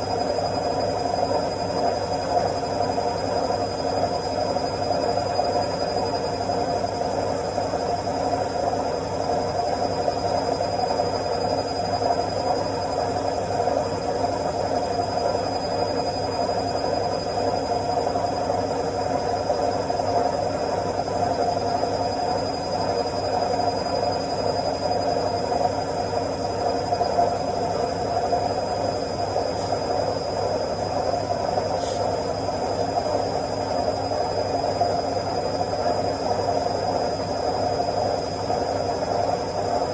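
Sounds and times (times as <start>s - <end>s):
faint high whine: 0.0s - 39.9s
washing machine spinning: 0.0s - 39.9s.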